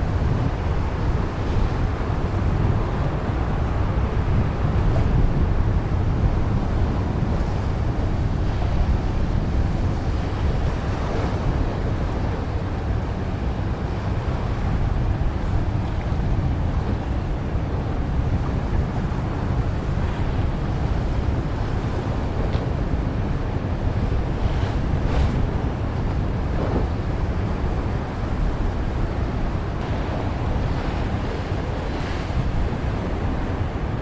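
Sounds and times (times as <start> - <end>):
sea waves washing: 0.0 - 34.0
wind buffeting microphone: 0.0 - 34.0.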